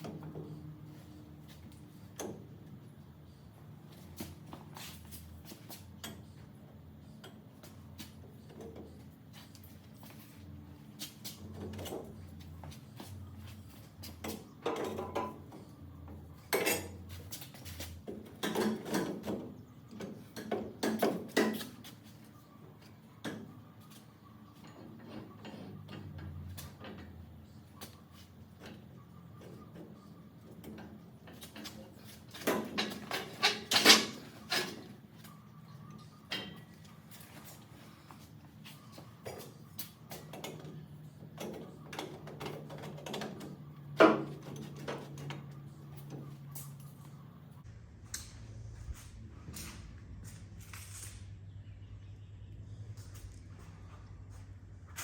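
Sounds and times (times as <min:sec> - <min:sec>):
exhaust parts and tools clattering: 0:04.0 - 0:22.3, 0:23.2 - 0:47.0.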